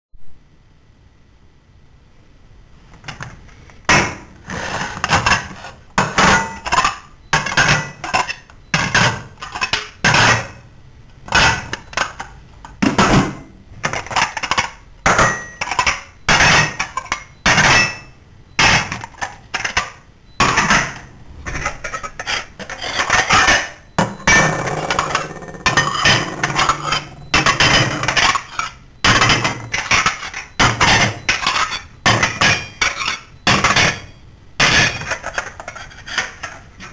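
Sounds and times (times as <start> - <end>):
pots and dishes clattering: 5.0 - 10.6, 18.6 - 36.9.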